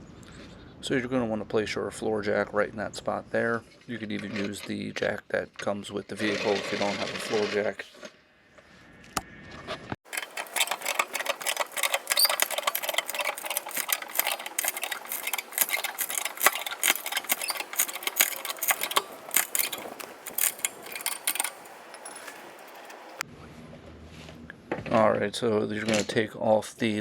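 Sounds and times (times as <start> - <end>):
floor jack clicking and rattling: 10.1 - 23.2.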